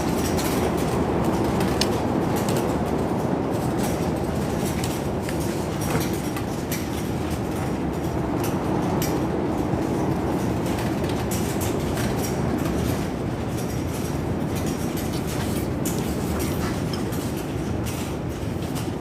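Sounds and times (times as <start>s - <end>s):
strong wind rumbling: 0.0s - 19.0s.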